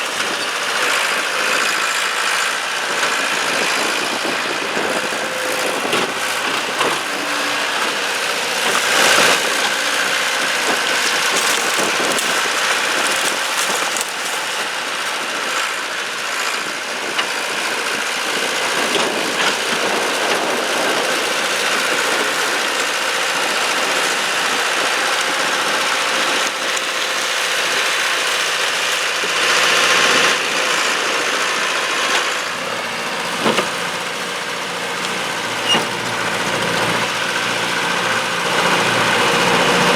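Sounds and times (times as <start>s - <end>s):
loader engine running: 0.0s - 39.9s
debris knocking and crashing: 6.0s - 15.3s.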